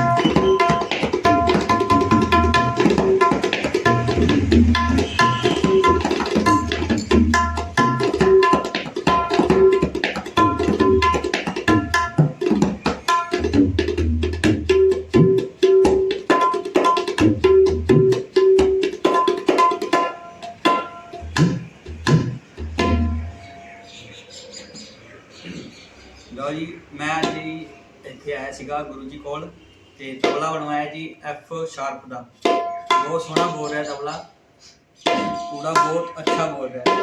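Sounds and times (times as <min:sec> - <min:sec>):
tabla treble strokes: 0:00.0 - 0:23.5.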